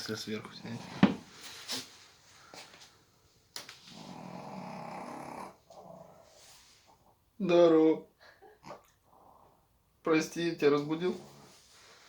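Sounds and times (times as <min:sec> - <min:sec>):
faint breath: 0:02.3 - 0:02.9
person snoring: 0:03.9 - 0:06.3.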